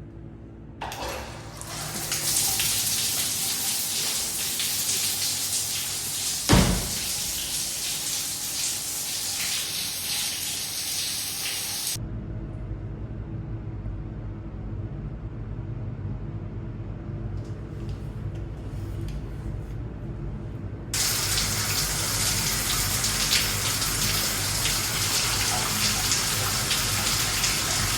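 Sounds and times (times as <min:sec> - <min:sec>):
water running from a tap: 0:00.8 - 0:12.0, 0:21.0 - 0:27.9
knock: 0:06.5 - 0:07.1.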